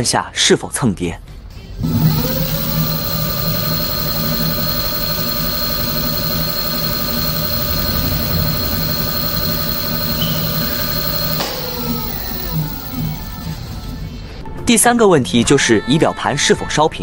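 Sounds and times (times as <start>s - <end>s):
electric motor whine: 1.8s - 14.3s.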